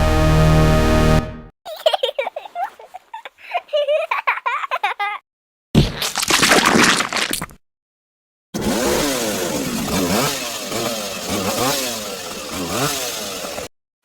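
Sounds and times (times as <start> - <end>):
engine revving: 8.6 - 13.7.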